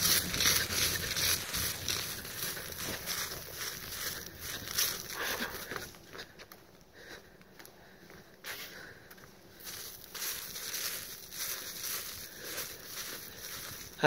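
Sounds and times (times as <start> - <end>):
rustling and crunching: 0.0 - 6.4, 9.6 - 14.0
footsteps: 0.0 - 14.0.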